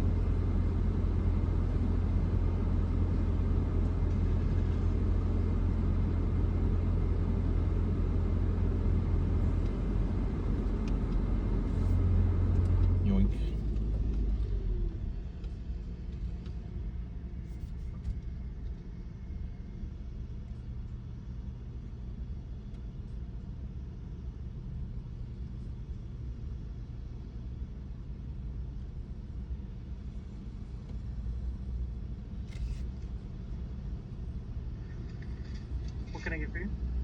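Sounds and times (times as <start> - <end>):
car engine rumble from inside: 0.0 - 37.0.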